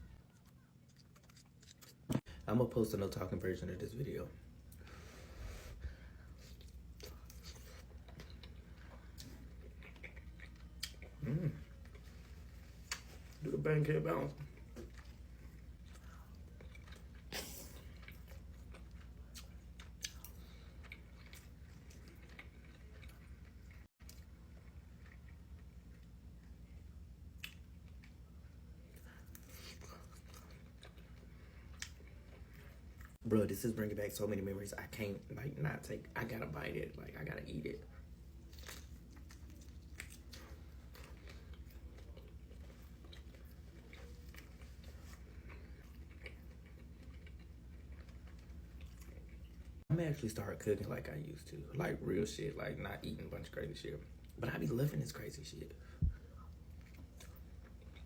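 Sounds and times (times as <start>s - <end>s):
person chewing: 0.1s - 2.3s, 4.7s - 13.4s, 14.4s - 26.6s, 27.3s - 33.2s, 38.0s - 49.8s, 56.1s - 58.0s
person biting and chewing: 0.4s - 2.2s.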